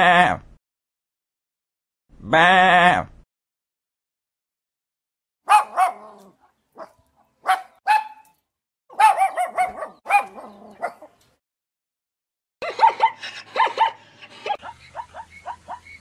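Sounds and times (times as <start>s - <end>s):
dog barking: 5.4s - 8.3s, 8.9s - 11.2s, 12.6s - 16.0s.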